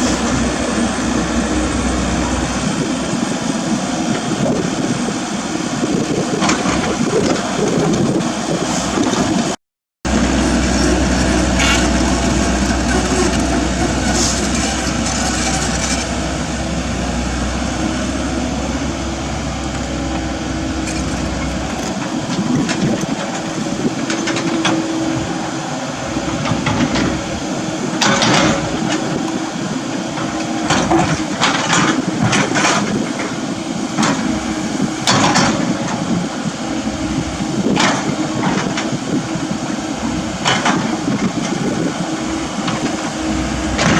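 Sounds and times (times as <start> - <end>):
diesel excavator engine running: 0.0 - 43.9
sharp knocks and scrapes: 10.6 - 16.2.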